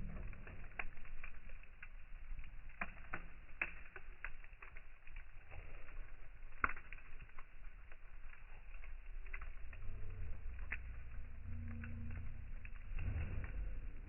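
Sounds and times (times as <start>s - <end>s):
low steady rumble: 0.0s - 2.8s, 7.0s - 14.0s
campfire wood crackling and popping: 0.0s - 14.0s.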